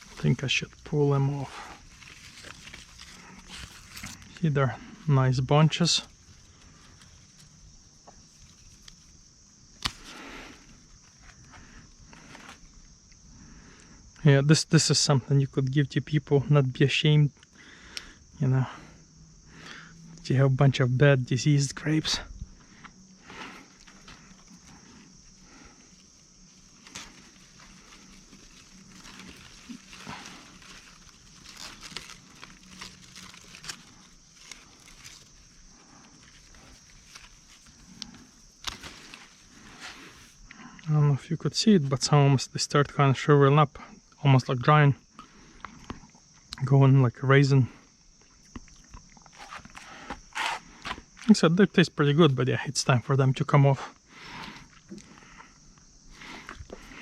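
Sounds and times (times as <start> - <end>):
rustle of grapevine leaves: 0.0 - 12.7, 23.2 - 40.5
crickets droning: 0.0 - 57.0.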